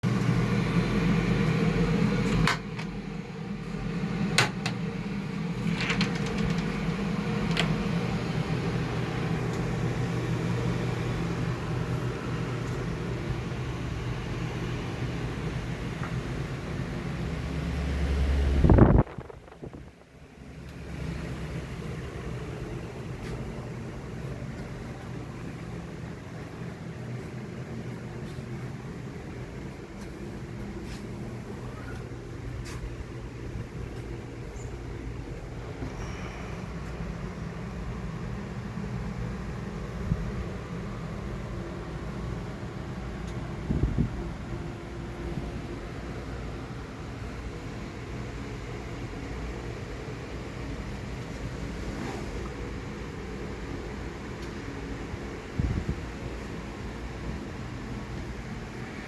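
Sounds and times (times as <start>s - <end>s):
fans and equipment humming: 0.0s - 59.0s
sharp clicks and knocks: 5.6s - 7.8s.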